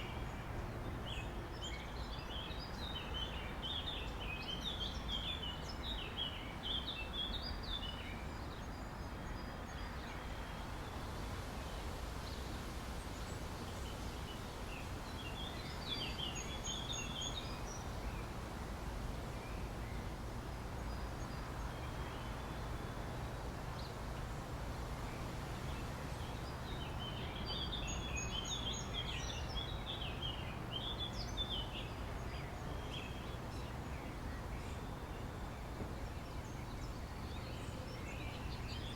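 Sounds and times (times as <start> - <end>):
small birds chirping: 25.1 - 38.9.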